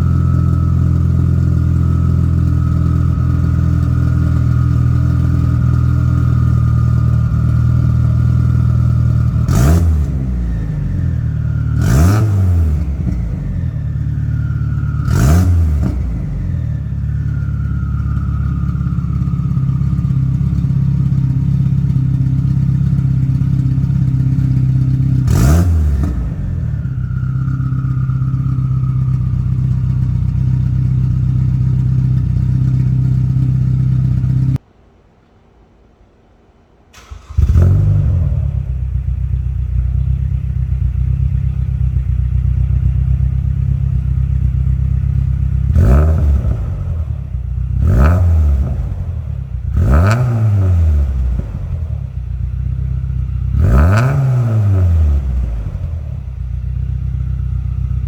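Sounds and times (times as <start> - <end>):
car engine revving through exhaust: 0.0 - 34.6, 37.1 - 56.6
turbo whine: 0.0 - 34.6.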